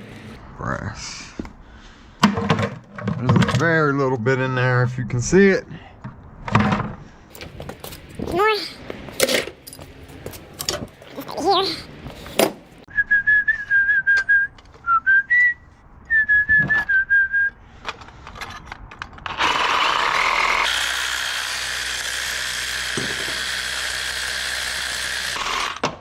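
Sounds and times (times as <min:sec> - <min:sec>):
person whistling a tune: 0:12.9 - 0:17.6
power tool running: 0:19.3 - 0:26.0.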